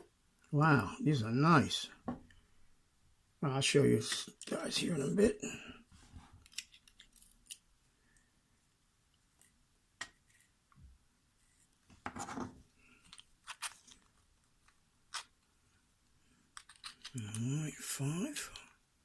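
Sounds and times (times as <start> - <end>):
small clicks of lock parts: 6.4 - 7.6, 16.5 - 17.4.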